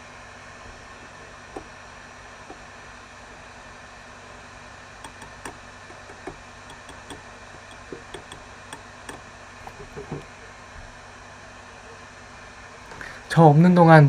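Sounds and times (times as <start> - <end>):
background hiss and hum: 0.0 - 14.0
light clicks and taps: 0.6 - 1.8, 5.0 - 11.0.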